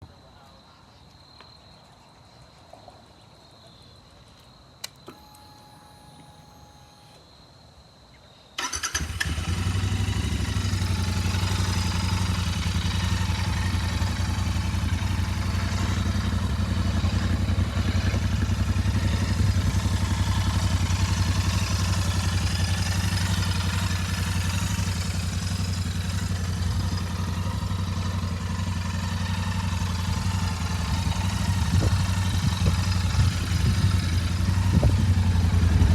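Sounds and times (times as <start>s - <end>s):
click: 4.4s - 7.2s
motorcycle engine starting and idling: 4.8s - 7.2s, 8.6s - 35.9s.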